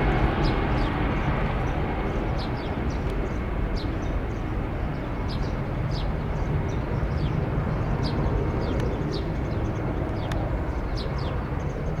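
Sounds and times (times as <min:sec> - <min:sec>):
jet engines rumbling: 0:00.0 - 0:05.7.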